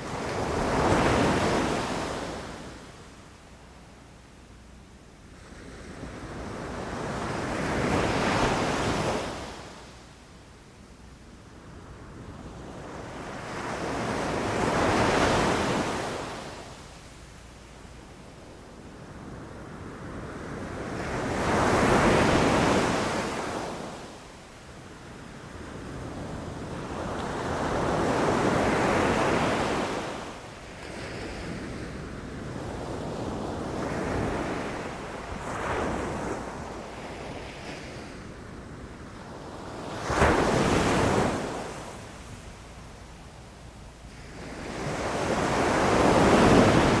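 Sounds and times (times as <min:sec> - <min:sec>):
waves breaking on shore: 0:25.1 - 0:47.0.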